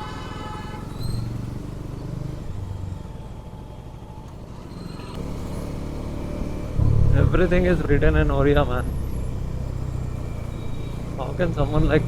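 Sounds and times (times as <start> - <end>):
motorcycle engine running: 5.2 - 12.0.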